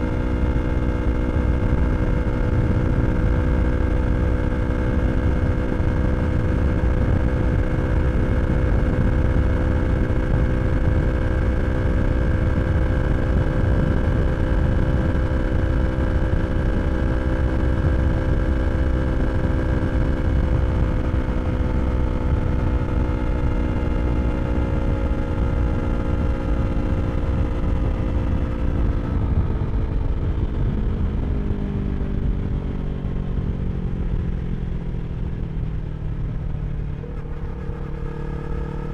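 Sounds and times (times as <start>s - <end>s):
low wind rumble: 0.0s - 38.9s
motorcycle engine cruising: 0.0s - 38.9s.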